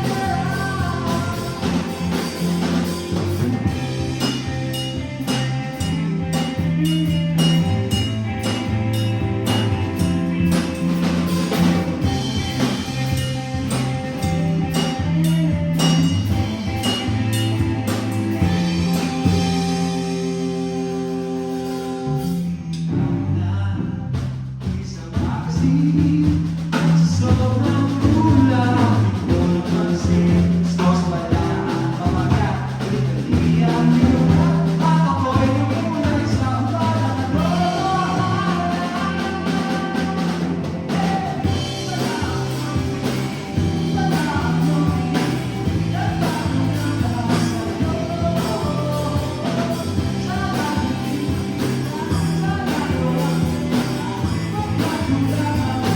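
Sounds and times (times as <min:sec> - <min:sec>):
person singing: 0:00.0 - 0:02.9, 0:24.8 - 0:55.9
bass line: 0:00.0 - 0:55.9.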